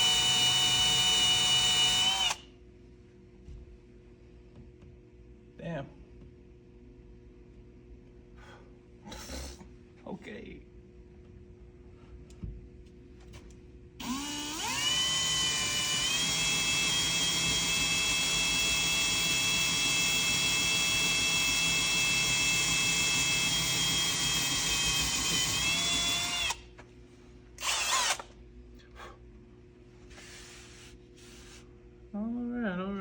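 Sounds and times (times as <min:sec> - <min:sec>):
cordless drill boring into wood: 0:00.0 - 0:02.4, 0:14.0 - 0:26.6, 0:27.6 - 0:28.3.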